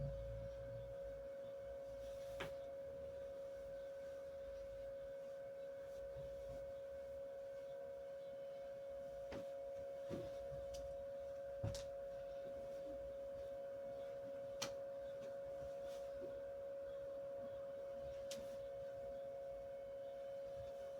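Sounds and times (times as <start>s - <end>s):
steady pure tone: 0.0s - 9.4s.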